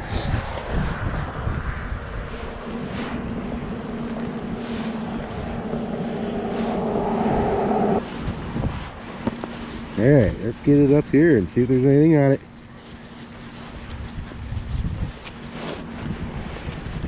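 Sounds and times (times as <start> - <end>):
vehicle engine running: 2.5 - 10.9.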